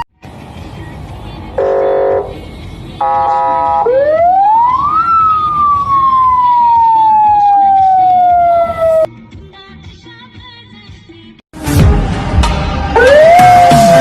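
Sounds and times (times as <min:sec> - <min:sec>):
siren horn tone: 0:01.6 - 0:02.4, 0:03.0 - 0:09.1
police siren wail: 0:03.0 - 0:09.1, 0:12.9 - 0:14.0.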